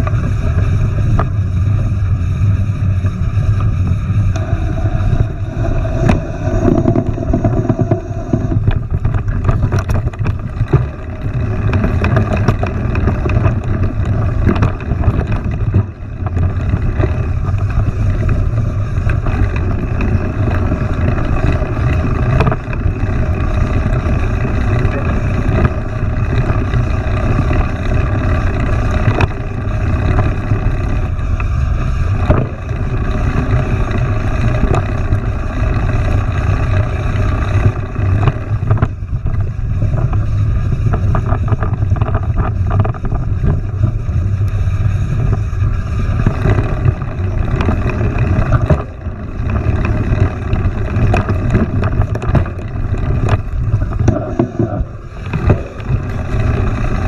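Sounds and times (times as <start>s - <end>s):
bike rattling over bumps: 0.0s - 57.0s
bike rolling low rumble: 0.0s - 57.0s.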